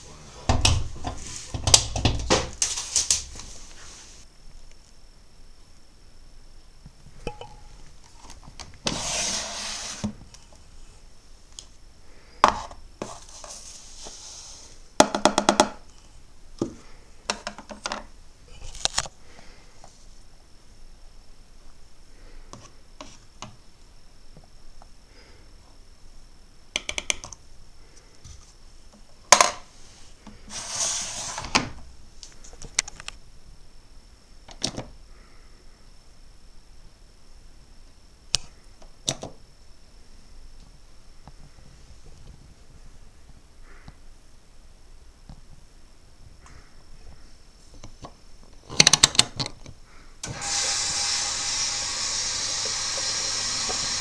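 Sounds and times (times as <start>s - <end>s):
washing machine hissing: 8.8s - 10.2s, 29.8s - 31.8s, 50.2s - 54.0s.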